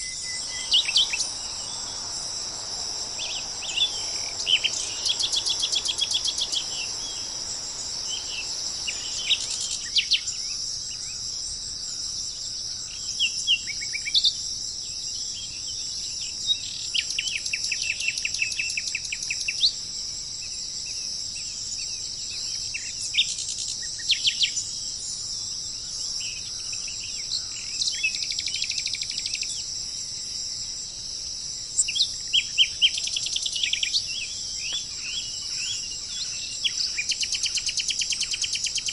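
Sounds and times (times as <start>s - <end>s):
birds chirping and trilling: 0.0s - 11.3s
insect drone: 0.0s - 38.9s.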